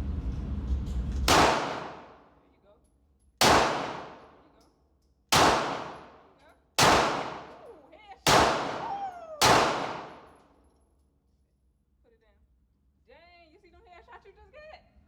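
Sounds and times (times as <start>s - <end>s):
pistol shots echoing: 1.3s - 2.2s, 3.4s - 4.4s, 5.3s - 6.2s, 6.8s - 7.7s, 8.3s - 10.3s.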